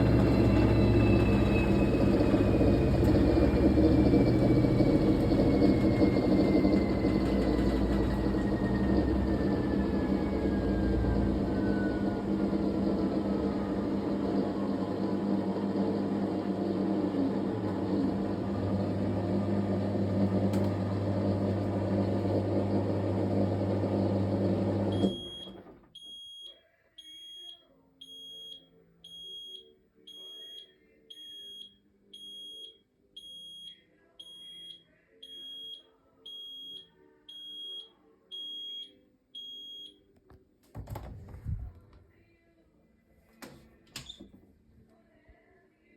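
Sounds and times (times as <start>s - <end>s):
washing machine humming and whining: 0.0s - 26.1s, 40.7s - 42.0s, 43.3s - 44.6s
washing machine beeping: 0.0s - 40.1s, 43.4s - 44.4s.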